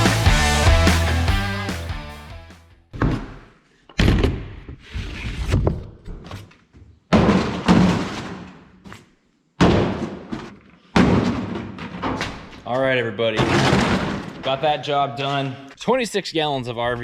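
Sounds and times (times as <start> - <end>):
plastic jugs thudding: 7.1 - 8.6, 9.6 - 12.5, 13.3 - 14.6.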